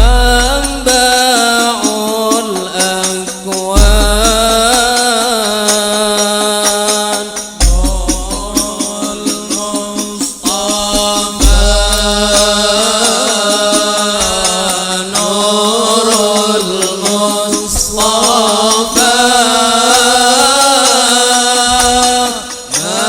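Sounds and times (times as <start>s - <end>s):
deep drum thumps: 0.0s - 1.1s, 3.8s - 5.0s, 7.6s - 8.8s, 10.6s - 13.0s, 17.7s - 19.1s, 21.7s - 22.4s
light percussion: 0.0s - 23.0s
man singing devotional song: 0.0s - 23.0s.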